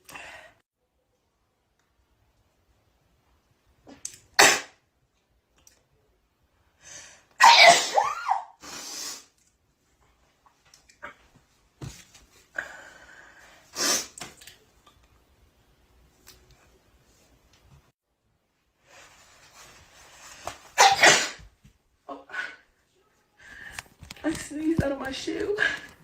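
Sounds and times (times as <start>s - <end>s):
woman sneezing: 7.4s - 8.6s, 20.8s - 21.4s.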